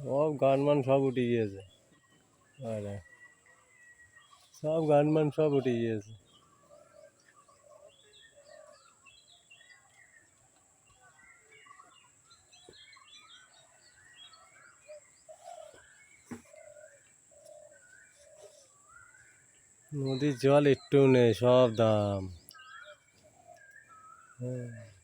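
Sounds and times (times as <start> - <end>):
birds chirping: 0.0 - 25.0
low bird call: 10.9 - 25.0.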